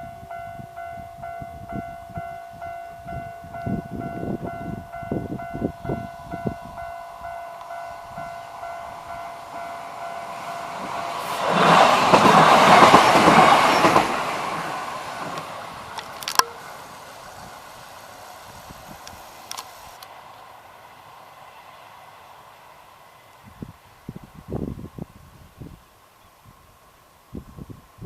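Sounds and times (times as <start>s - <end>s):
rhythmic clatter over rail joints: 0.0s - 23.3s
train wheels rumbling: 3.1s - 25.0s
sharp click: 16.0s - 16.6s.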